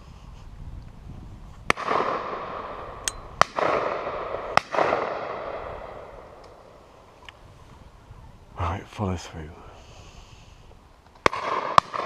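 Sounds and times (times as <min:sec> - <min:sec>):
distant gunshot: 0:01.7 - 0:02.8, 0:03.4 - 0:06.1, 0:11.2 - 0:12.0
shotgun shots with echo: 0:01.7 - 0:02.8, 0:03.4 - 0:06.1, 0:11.2 - 0:12.0.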